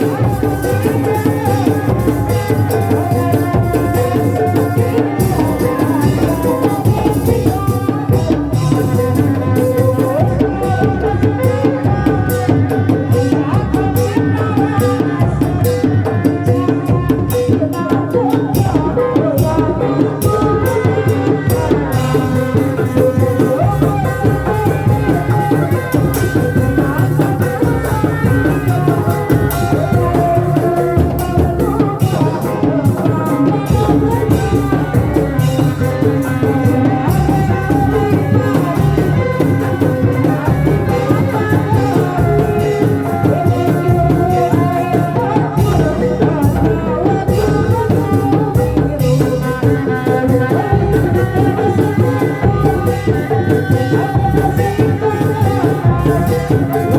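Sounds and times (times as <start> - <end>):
drums: 0.0 - 56.9
rattling percussion: 0.0 - 56.9.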